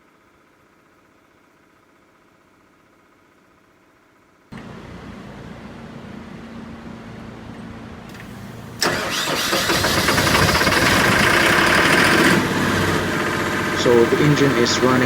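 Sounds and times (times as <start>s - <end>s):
diesel engine running: 4.5s - 15.0s
diesel engine cranking: 8.1s - 15.0s.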